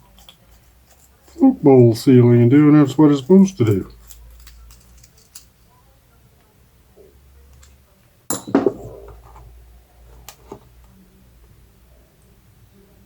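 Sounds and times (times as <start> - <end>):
small metal parts clinking: 3.7 - 5.5.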